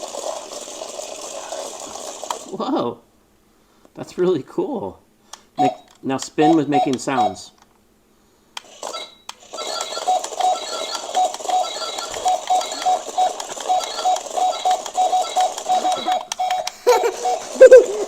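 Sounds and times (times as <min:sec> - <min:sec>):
person speaking: 0:05.6 - 0:07.6
toy robot high beeps: 0:08.9 - 0:17.8.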